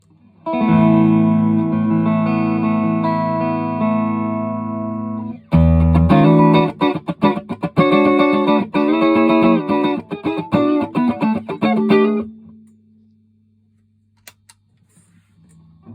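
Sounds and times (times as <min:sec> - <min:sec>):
electric guitar chords and notes: 0:00.4 - 0:12.7.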